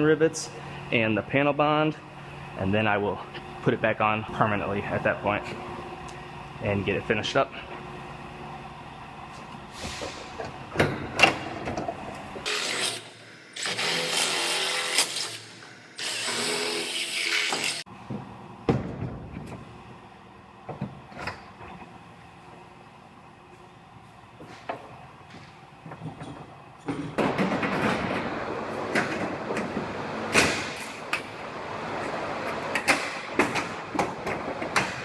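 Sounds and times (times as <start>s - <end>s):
drill boring through metal: 12.5s - 15.4s, 16.0s - 17.8s.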